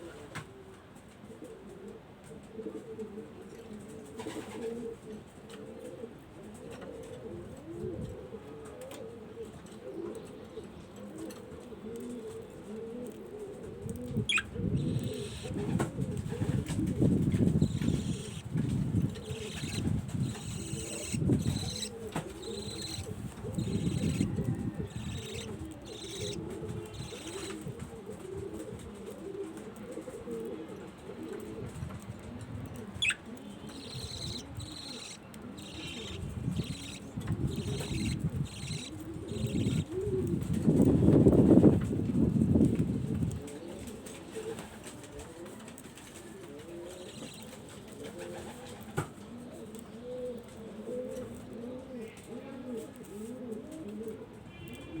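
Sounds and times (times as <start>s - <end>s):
pigeons cooing: 0.0s - 55.0s
budgerigars chirping: 14.3s - 15.6s, 17.6s - 18.5s, 19.1s - 24.3s, 24.9s - 27.6s, 33.0s - 39.9s.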